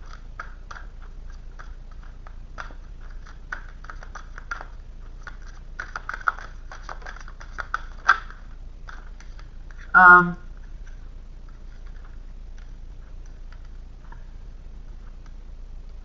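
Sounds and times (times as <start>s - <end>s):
cards clicking and flicking: 0.0s - 9.9s.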